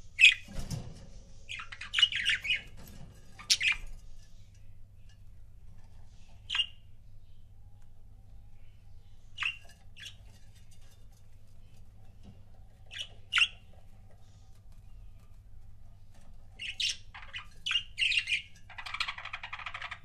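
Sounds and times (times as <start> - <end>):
low steady hum: 0.0 - 20.0
budgerigars chirping: 1.5 - 2.7, 6.5 - 6.8, 9.4 - 10.2, 12.9 - 13.8, 16.6 - 20.0.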